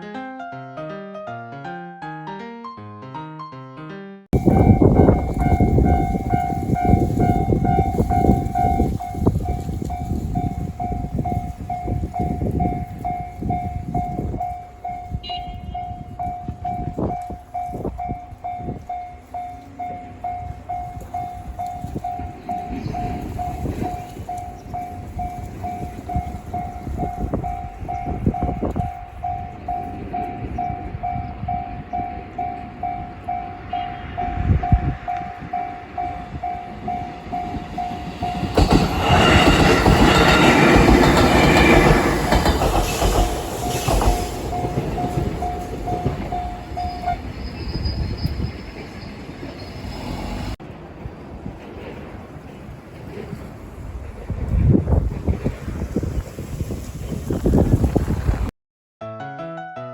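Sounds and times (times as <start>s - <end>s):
level-crossing warning bell: 4.4s - 49.6s
train rumble and wheel clatter: 4.4s - 58.5s.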